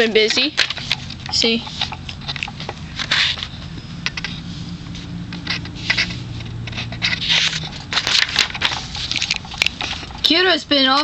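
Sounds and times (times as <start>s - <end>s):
paper pages rustling: 0.0s - 10.3s
steady low hum: 0.0s - 11.0s.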